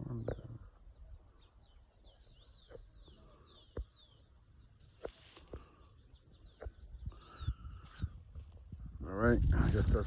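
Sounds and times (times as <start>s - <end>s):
footsteps on a trail: 4.9s - 5.9s.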